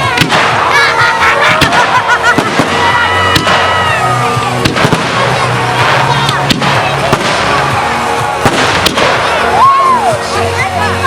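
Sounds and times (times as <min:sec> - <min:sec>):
fireworks bangs and crackles: 0:00.0 - 0:11.0
loud music: 0:00.0 - 0:11.0.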